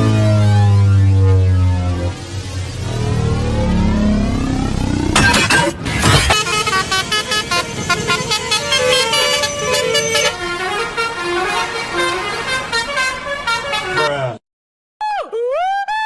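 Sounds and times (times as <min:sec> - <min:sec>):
rumbling noisy burst: 0:00.0 - 0:09.4
multi-tone bus horn tune: 0:06.1 - 0:14.4.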